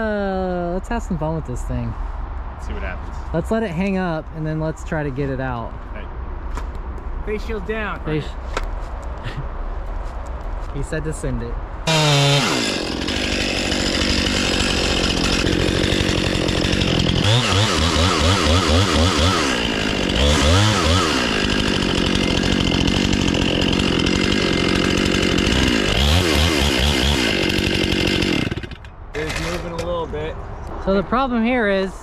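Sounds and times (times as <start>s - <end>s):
chainsaw cutting tree trunk: 11.9s - 29.5s.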